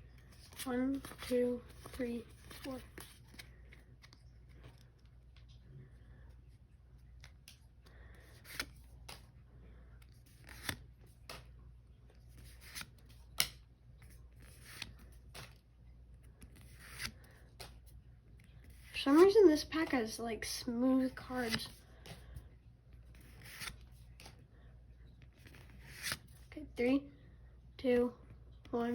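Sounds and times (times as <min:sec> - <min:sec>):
cards scraping: 0:00.2 - 0:05.1, 0:07.2 - 0:09.4, 0:10.0 - 0:11.5, 0:12.2 - 0:15.6, 0:16.2 - 0:19.4, 0:21.2 - 0:22.4, 0:23.0 - 0:24.4, 0:25.2 - 0:26.5
card flicks: 0:12.7 - 0:13.6.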